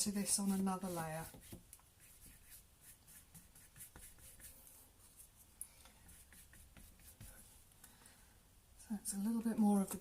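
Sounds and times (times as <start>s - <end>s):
scratchy brush strokes: 0.0s - 7.7s.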